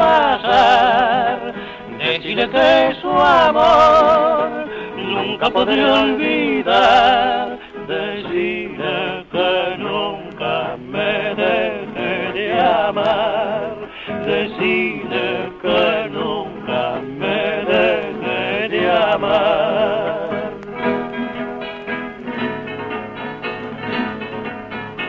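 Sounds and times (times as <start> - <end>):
man singing with vibrato: 0.0 - 20.6
plucked guitar: 0.0 - 25.0.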